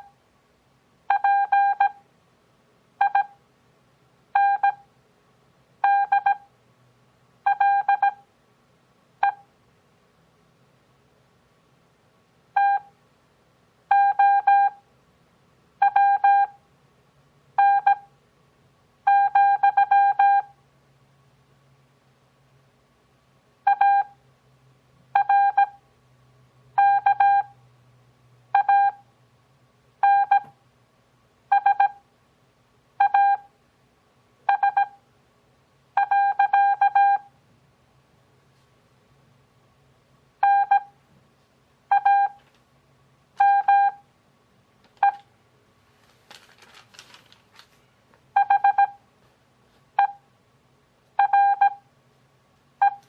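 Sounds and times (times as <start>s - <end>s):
morse code beeping tone: 5.8s - 6.5s, 33.0s - 33.4s, 36.0s - 37.3s, 40.4s - 40.9s, 41.9s - 42.4s, 43.4s - 44.0s, 48.4s - 49.0s, 51.2s - 51.8s.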